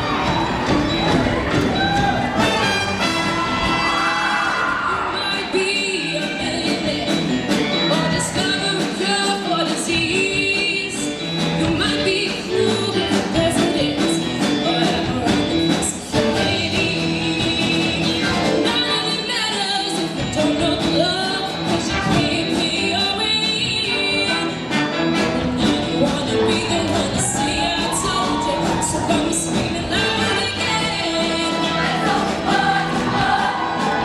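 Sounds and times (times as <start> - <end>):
choir singing with instruments: 0.0 - 34.0.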